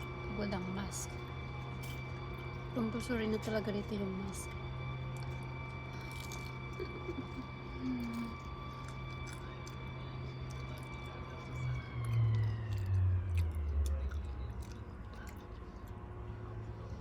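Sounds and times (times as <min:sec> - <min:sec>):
mechanical hum: 0:00.0 - 0:17.0
chewing crunchy fried food: 0:04.3 - 0:16.6.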